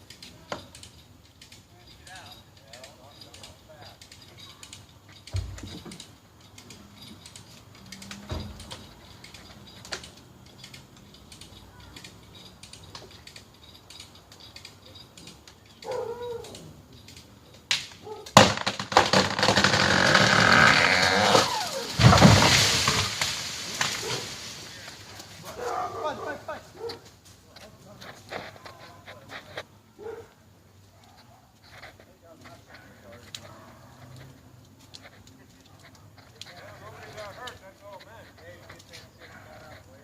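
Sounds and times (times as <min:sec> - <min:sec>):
tree hitting ground thud: 0:17.7 - 0:25.8
tree trunk cracking: 0:17.7 - 0:25.9
crackling rush of branches: 0:18.4 - 0:29.8.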